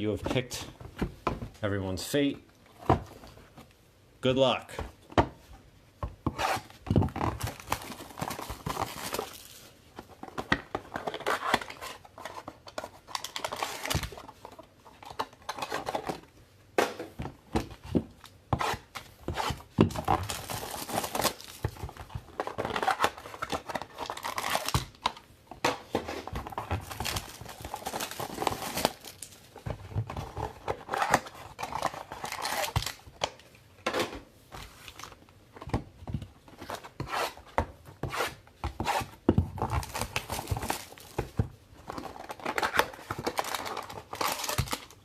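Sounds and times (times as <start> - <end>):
plastic shrink wrap tearing: 26.8 - 29.4.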